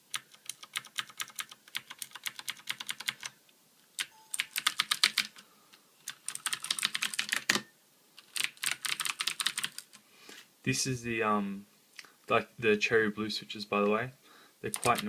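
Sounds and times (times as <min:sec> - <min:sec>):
mechanical keyboard typing: 0:00.1 - 0:03.4, 0:04.0 - 0:05.4, 0:06.0 - 0:10.0, 0:14.7 - 0:15.0.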